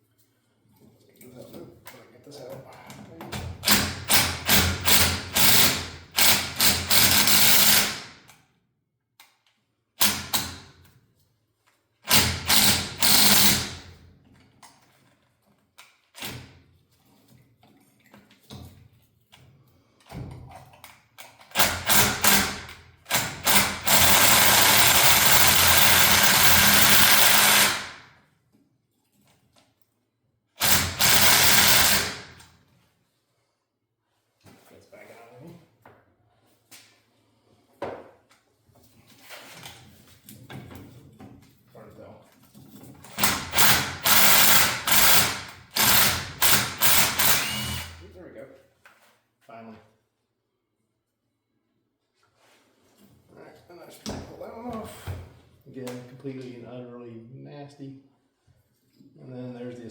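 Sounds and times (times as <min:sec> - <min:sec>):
impact gun hammering bolts: 0:21.5 - 0:28.0, 0:30.6 - 0:32.4, 0:43.1 - 0:48.0.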